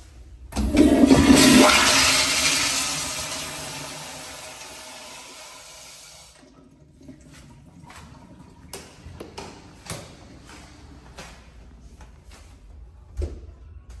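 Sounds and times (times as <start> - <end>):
toilet flush water rushing: 0.6 - 10.6.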